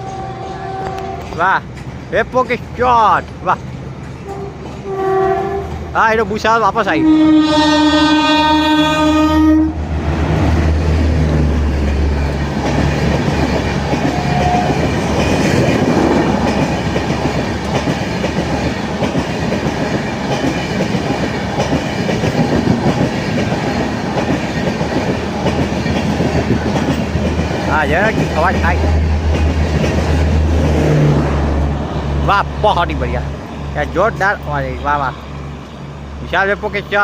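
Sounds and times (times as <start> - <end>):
locomotive horn: 0.0 - 1.4, 4.2 - 5.9, 6.8 - 9.8, 14.0 - 14.8
train coaches rumbling past: 0.0 - 37.0.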